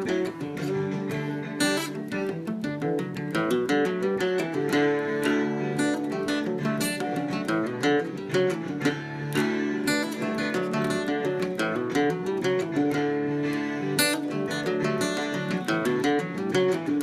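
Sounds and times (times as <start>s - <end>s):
acoustic guitar plucked and strummed: 0.0s - 17.0s.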